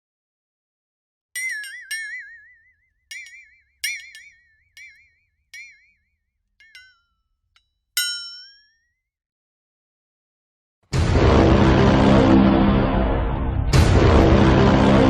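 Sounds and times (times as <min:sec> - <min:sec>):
warbling chime-like tones: 0:01.4 - 0:06.0.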